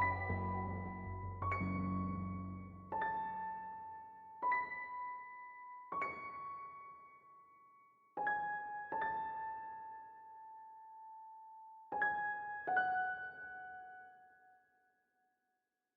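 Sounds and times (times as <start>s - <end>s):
slow piano notes: 0.0s - 7.2s.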